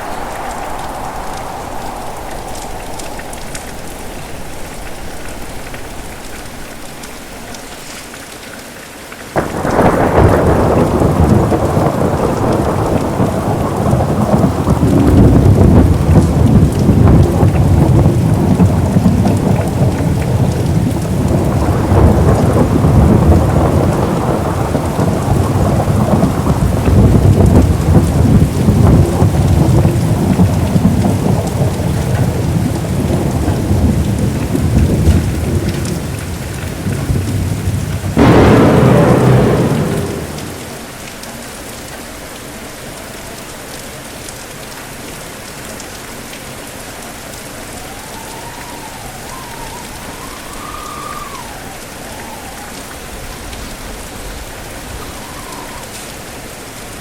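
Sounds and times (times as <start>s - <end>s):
sharp thunderclap: 0.0s - 6.9s, 9.4s - 41.0s
thunder rumbling: 0.0s - 7.7s, 9.4s - 41.1s
heavy rain: 0.0s - 57.0s.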